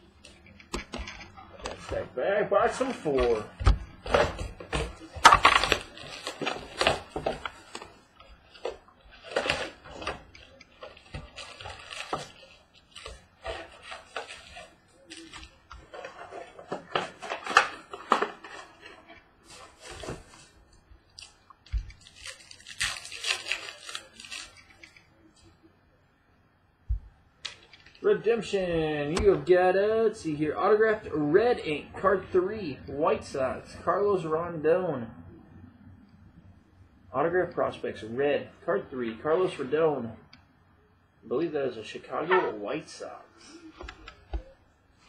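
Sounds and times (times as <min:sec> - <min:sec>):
packaging rustling and tearing: 0:02.6 - 0:25.0.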